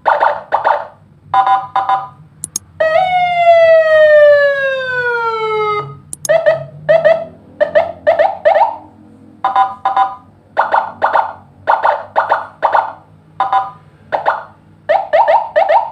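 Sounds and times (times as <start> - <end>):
electronic siren chirps: 6.2 - 8.8, 12.3 - 15.9.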